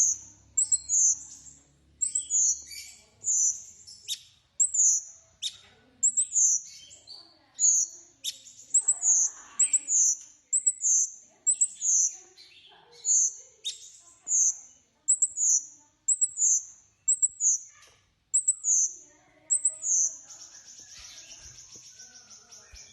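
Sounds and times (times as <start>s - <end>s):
rapidly pulsing bird trill: 0.0s - 22.9s
songbird singing: 0.0s - 22.9s.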